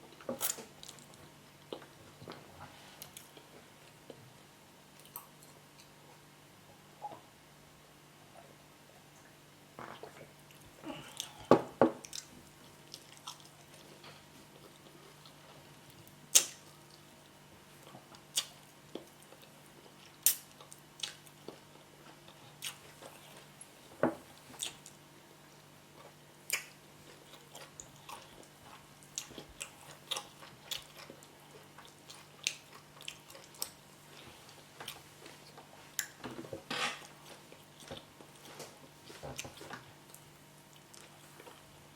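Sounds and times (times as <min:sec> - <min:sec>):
wet chewing and smacking: 0:12.0 - 0:14.0, 0:17.8 - 0:23.5, 0:26.0 - 0:36.2.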